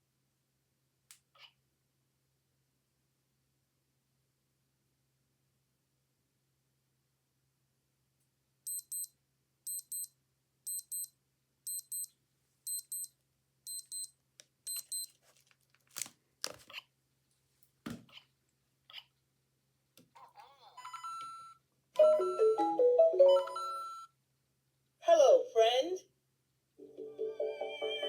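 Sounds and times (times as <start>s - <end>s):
digital watch alarm beeping: 8.7s - 9.1s, 9.7s - 10.1s, 10.7s - 11.1s, 11.7s - 12.1s, 12.7s - 13.1s, 13.7s - 14.1s, 14.7s - 15.1s.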